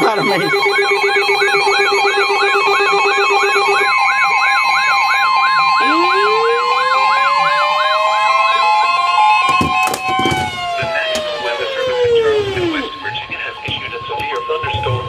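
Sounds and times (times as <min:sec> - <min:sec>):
steady alert tones: 0:00.0 - 0:09.4
electronic siren yelping: 0:00.0 - 0:15.0
rising siren tone: 0:00.0 - 0:15.0.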